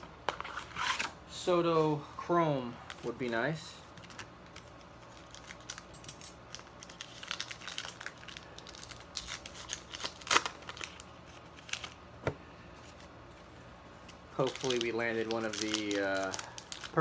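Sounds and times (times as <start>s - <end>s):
packaging crinkling: 3.9s - 12.0s, 14.4s - 17.0s.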